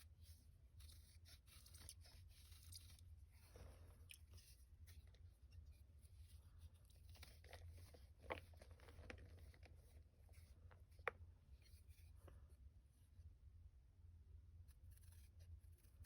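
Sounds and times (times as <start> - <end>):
chalk crunching and crackling: 0.0 - 12.4.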